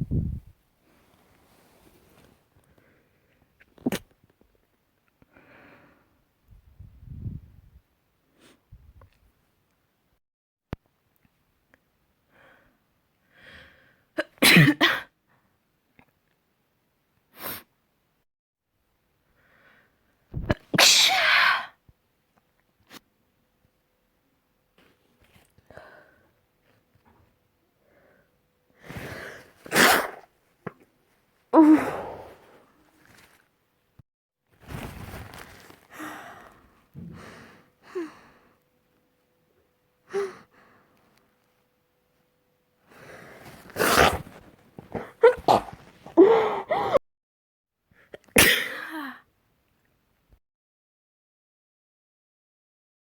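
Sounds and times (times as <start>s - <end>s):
person sneezing: 14.2s - 15.1s, 20.5s - 21.8s, 28.9s - 30.3s, 31.6s - 32.6s, 43.4s - 47.0s, 48.2s - 49.2s
person gasping in-breaths: 31.6s - 32.7s, 35.9s - 38.5s, 46.2s - 47.0s
person sniffing: 42.9s - 47.0s.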